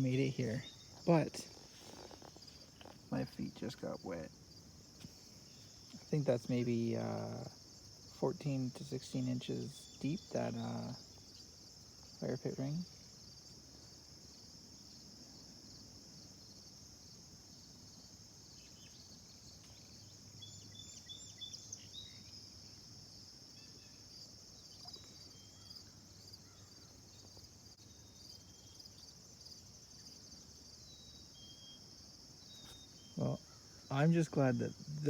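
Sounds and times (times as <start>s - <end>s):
crickets chirping: 0.0s - 35.0s
higher chirps: 32.6s - 35.0s.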